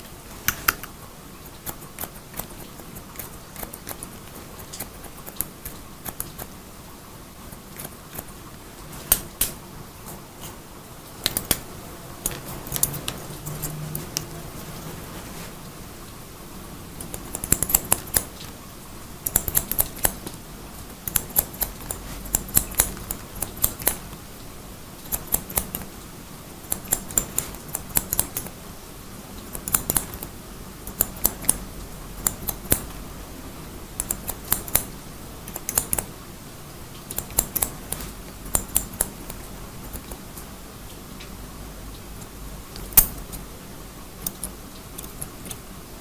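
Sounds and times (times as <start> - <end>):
steady background hiss: 0.0 - 46.0
scissors snipping hair: 1.5 - 6.6, 7.5 - 10.6, 11.2 - 14.4, 17.0 - 18.6, 19.2 - 24.2, 25.0 - 25.9, 26.7 - 28.5, 29.5 - 30.3, 30.9 - 31.6, 32.2 - 33.0, 34.0 - 34.9, 35.5 - 36.1, 37.1 - 40.2, 42.8 - 43.4, 44.2 - 45.6.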